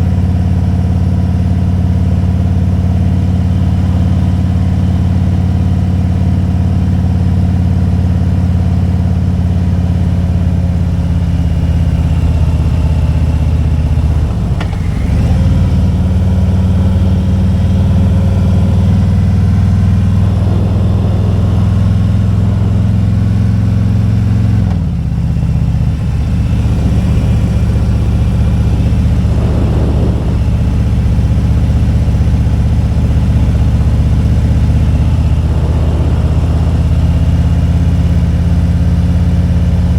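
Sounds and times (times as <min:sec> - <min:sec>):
motorcycle engine running: 0:09.6 - 0:39.9.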